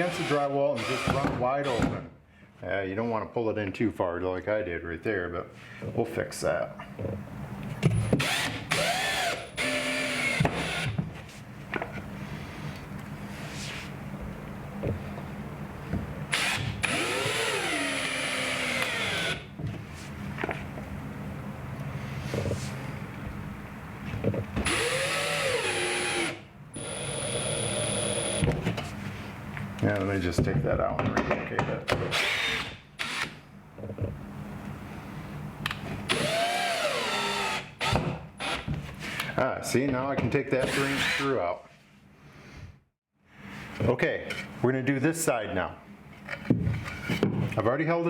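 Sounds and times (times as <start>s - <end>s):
power drill driving screws: 8.0s - 11.0s, 16.3s - 19.4s, 24.6s - 28.4s, 32.1s - 33.4s, 36.1s - 38.7s, 40.6s - 41.3s.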